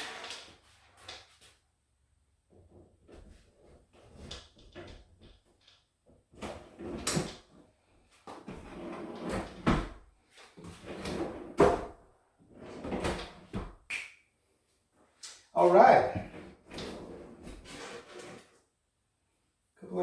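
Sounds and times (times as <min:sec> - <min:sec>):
wooden parts sliding and scraping: 0:16.2 - 0:18.6.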